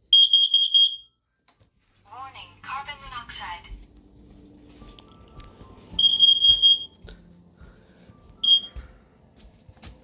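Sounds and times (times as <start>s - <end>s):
high-pitched alarm beeps: 6.0s - 6.9s, 8.4s - 8.8s.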